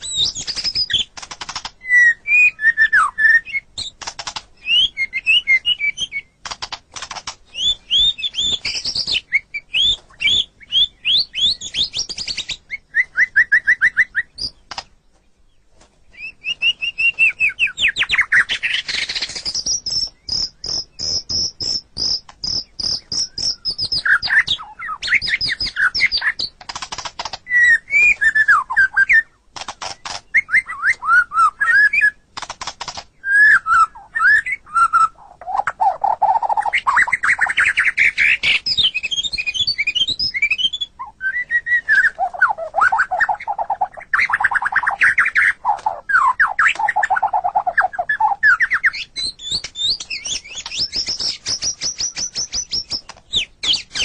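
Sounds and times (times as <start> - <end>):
bird clicking chatter: 0.0 - 1.8, 3.8 - 4.8, 5.8 - 9.3, 14.4 - 15.0, 18.1 - 28.5, 29.5 - 31.0, 32.4 - 33.2, 44.3 - 54.0
bird singing whistles and trills: 0.0 - 6.5, 7.5 - 14.8, 16.1 - 26.6, 27.4 - 32.3, 33.2 - 54.0.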